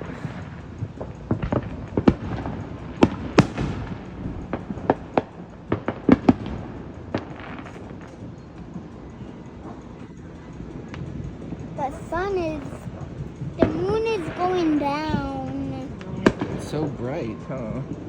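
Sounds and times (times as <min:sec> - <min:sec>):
fireworks bangs and pops: 0:00.0 - 0:10.0.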